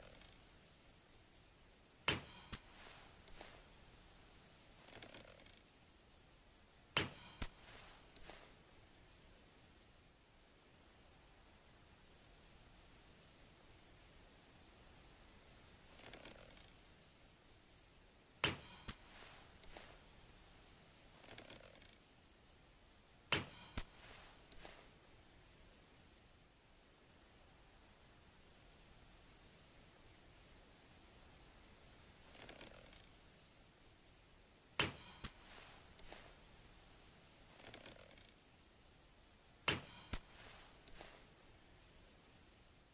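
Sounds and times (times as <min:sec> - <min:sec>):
soft rustle: 0:00.0 - 0:01.5, 0:02.1 - 0:09.6, 0:14.6 - 0:26.1, 0:29.2 - 0:42.9
arrow hitting target knock: 0:18.4 - 0:19.0, 0:34.8 - 0:35.5.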